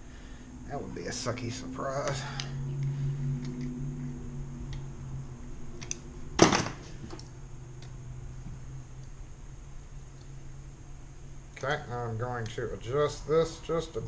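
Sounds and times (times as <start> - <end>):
steady low hum: 0.0 - 14.0
loud metal clunk: 6.4 - 6.9.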